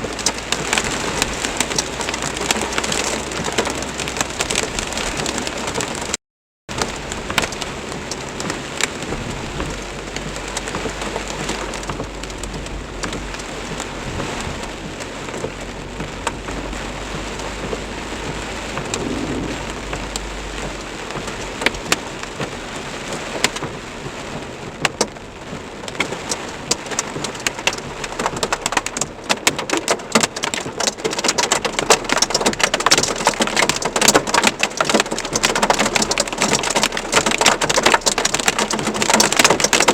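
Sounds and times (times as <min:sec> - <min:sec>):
heavy rain with hail: 0:00.0 - 0:39.9
low rumble of thunder: 0:06.8 - 0:23.3.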